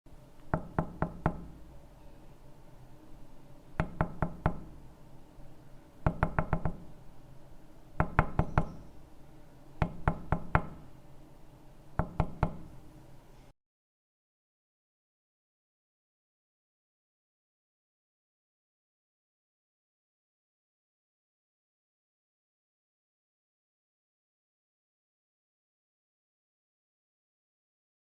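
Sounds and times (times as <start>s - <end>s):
knocking on a door: 0.5s - 1.5s, 3.8s - 4.7s, 6.0s - 6.8s, 8.0s - 8.8s, 9.8s - 10.8s, 12.0s - 12.7s.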